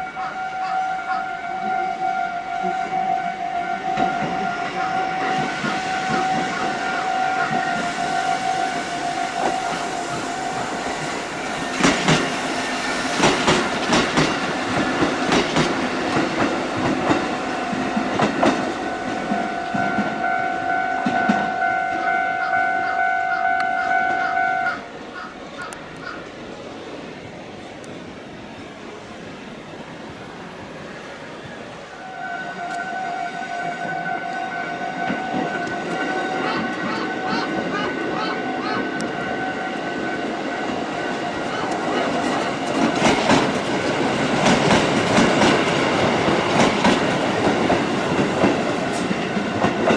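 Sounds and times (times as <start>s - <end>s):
train wheels clacking over rail joints: 3.9s - 20.2s, 40.6s - 49.9s
level crossing warning bell: 17.7s - 24.8s.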